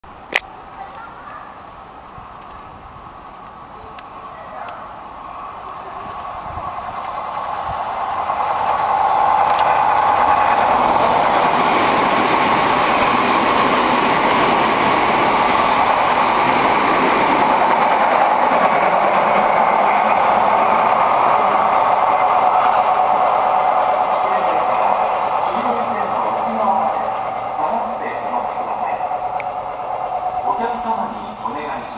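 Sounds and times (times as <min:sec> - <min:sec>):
electric train passing: 0:01.6 - 0:31.9.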